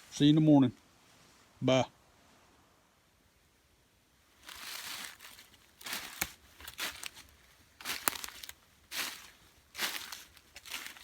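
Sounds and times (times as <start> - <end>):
dry crinkling rustles: 4.4 - 11.0.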